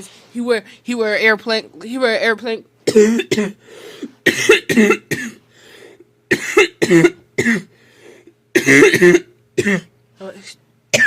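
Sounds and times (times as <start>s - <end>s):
child coughing: 2.9s - 5.4s, 6.3s - 7.7s, 8.5s - 10.0s.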